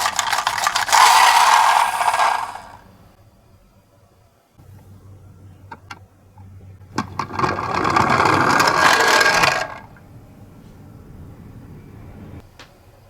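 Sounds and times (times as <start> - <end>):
toy car clicks: 0.0 - 2.8, 7.0 - 9.8
toy car wheels rolling: 0.0 - 2.8, 7.0 - 10.0.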